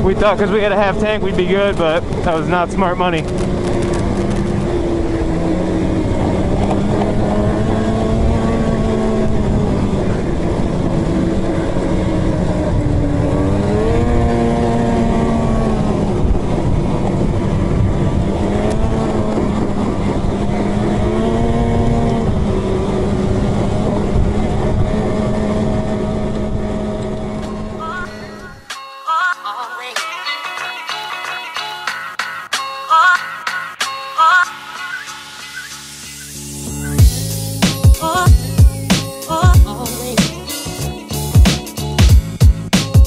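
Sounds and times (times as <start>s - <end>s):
snowmobile engine revving: 0.0s - 28.5s.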